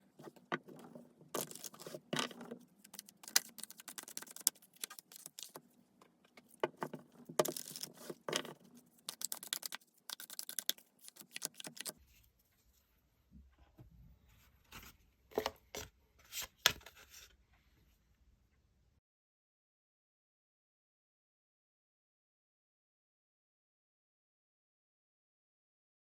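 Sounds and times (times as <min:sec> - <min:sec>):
cards being shuffled: 0:01.4 - 0:05.6, 0:07.4 - 0:12.0.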